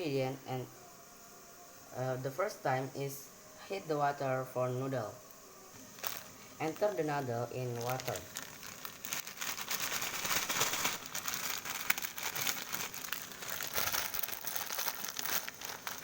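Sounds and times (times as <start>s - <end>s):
noodles crinkling and crackling: 5.8s - 16.0s.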